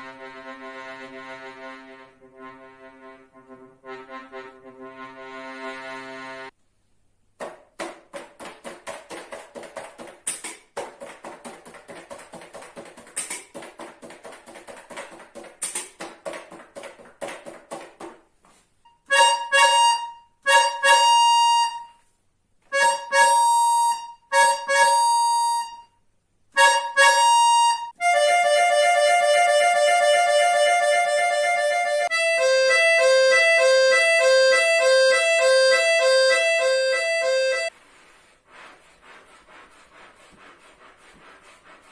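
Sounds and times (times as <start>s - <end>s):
accordion imitating siren: 0.0s - 6.5s, 19.1s - 21.9s, 22.7s - 25.8s, 26.6s - 37.7s
accordion imitating typewriter: 8.1s - 18.0s, 19.1s - 21.8s, 22.7s - 25.8s, 26.6s - 37.7s.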